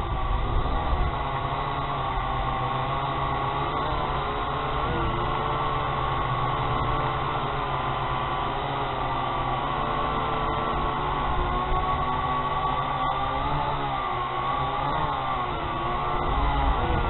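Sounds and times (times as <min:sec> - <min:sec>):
wind rumbling on microphone: 0:00.0 - 0:02.2, 0:15.4 - 0:17.0
drone propellers whining: 0:00.0 - 0:17.0.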